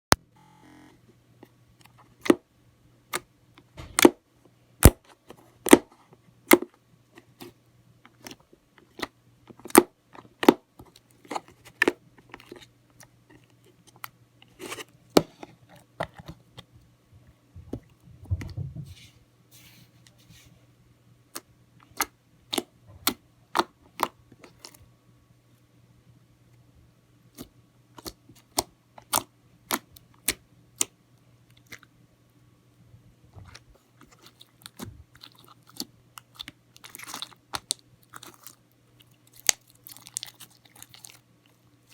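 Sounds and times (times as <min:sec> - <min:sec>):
slime squelch: 0:33.4 - 0:41.9.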